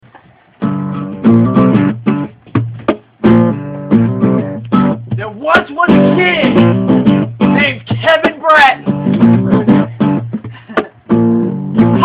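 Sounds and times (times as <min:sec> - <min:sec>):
acoustic guitar strumming chords: 0:00.6 - 0:12.0.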